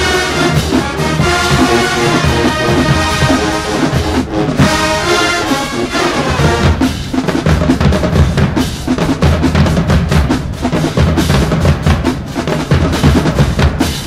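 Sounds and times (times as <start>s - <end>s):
brass chords: 0.0s - 7.6s
snare drums: 0.0s - 14.0s.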